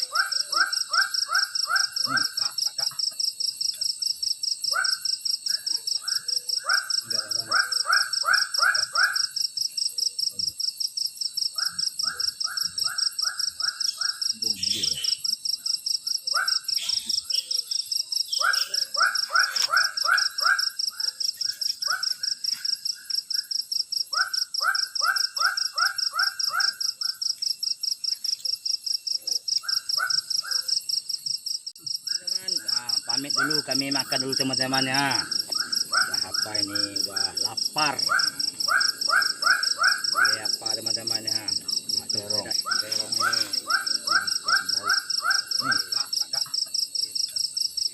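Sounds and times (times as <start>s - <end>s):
high insect trill: 0.0s - 47.9s
insects pulsing high buzz: 0.0s - 47.9s.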